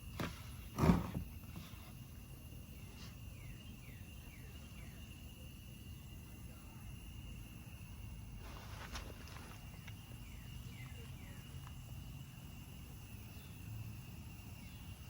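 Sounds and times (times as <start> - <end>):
high insect drone: 0.0 - 15.0.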